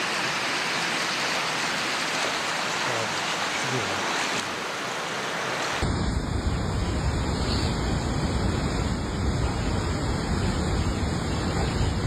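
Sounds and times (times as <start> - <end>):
hiss of rain: 0.0 - 12.0
rushing floodwater: 0.0 - 12.0
wind rumble on microphone: 5.8 - 12.0.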